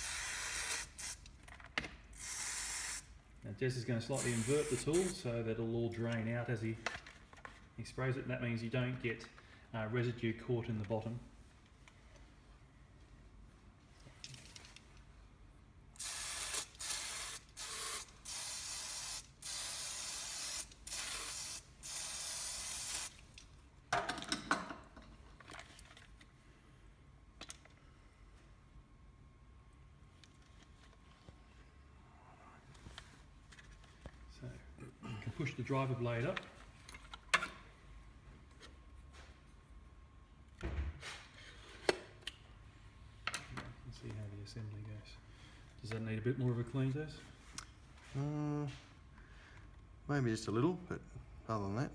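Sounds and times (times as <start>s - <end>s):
aerosol can spraying: 0.0s - 1.3s, 2.2s - 3.1s, 4.2s - 5.2s, 16.0s - 23.2s.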